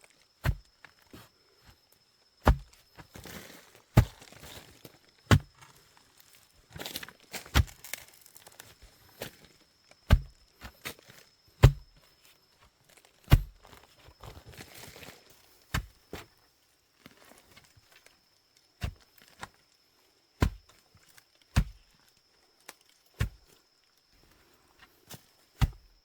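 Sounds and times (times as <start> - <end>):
sharp knocks and thuds: 0.4 - 0.7, 2.4 - 3.3, 3.9 - 4.4, 5.3 - 5.7, 7.4 - 9.3, 10.0 - 10.9, 11.6 - 12.0, 13.3 - 13.8, 15.7 - 16.0, 20.4 - 20.8, 21.6 - 21.9, 23.2 - 23.5, 25.6 - 26.0.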